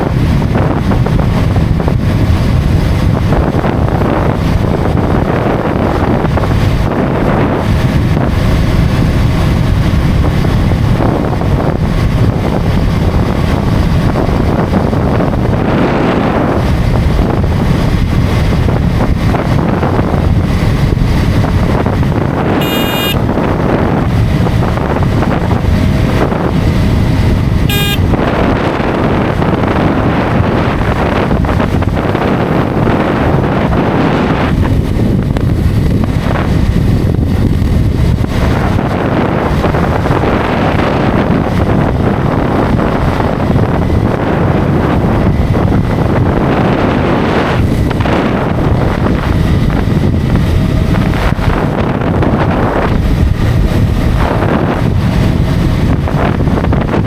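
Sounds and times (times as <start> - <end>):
motorcycle engine and road noise: 0.0 - 57.0
wind buffeting microphone: 0.0 - 57.0
short high beeps: 22.6 - 23.2, 27.7 - 28.1.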